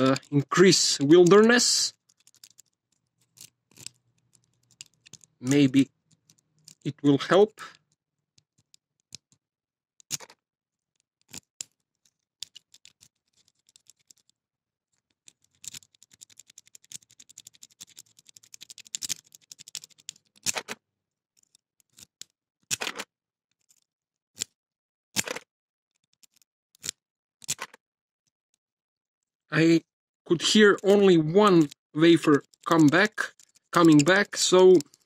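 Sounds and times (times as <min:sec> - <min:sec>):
lock pick scraping and clicking: 0:01.3 - 0:06.9, 0:11.0 - 0:14.4, 0:15.0 - 0:20.8, 0:34.8 - 0:35.0.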